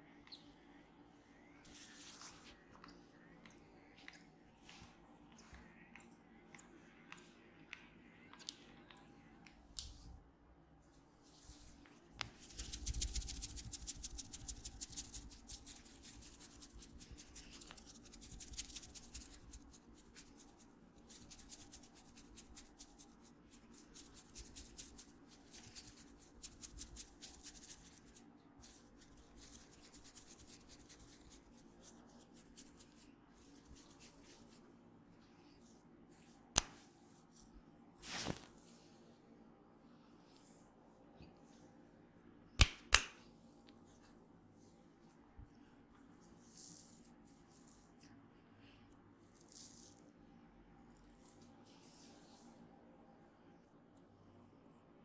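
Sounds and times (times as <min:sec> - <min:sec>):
hands rubbing and tapping skin: 0:11.5 - 0:34.6, 0:36.5 - 0:36.9, 0:42.6 - 0:43.8.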